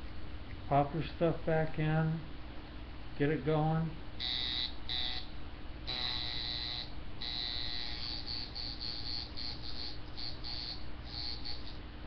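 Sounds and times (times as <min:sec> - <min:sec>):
low power supply hum: 0:00.0 - 0:12.0
tattoo machine buzzing: 0:04.2 - 0:05.3, 0:05.9 - 0:11.8.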